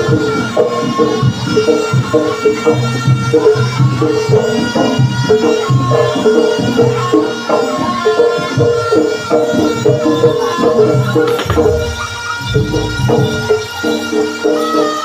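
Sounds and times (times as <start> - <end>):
pitched percussion notes: 0.0 - 15.0
hand drums quick rhythm: 10.6 - 13.7.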